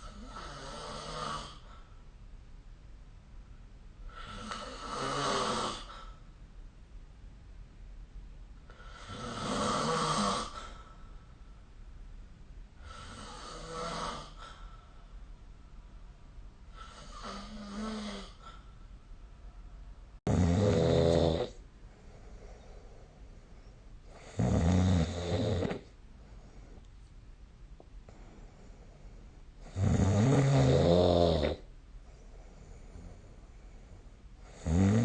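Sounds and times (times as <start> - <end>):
person snoring: 0.0 - 1.7, 4.1 - 6.1, 8.7 - 10.9, 12.8 - 14.6, 16.7 - 18.6, 20.3 - 21.6, 24.1 - 25.9, 29.6 - 31.7, 34.4 - 35.0.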